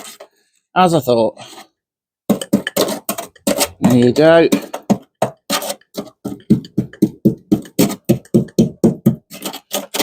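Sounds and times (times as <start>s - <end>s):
screwdriver knocking on rusted metal: 2.3s - 9.3s.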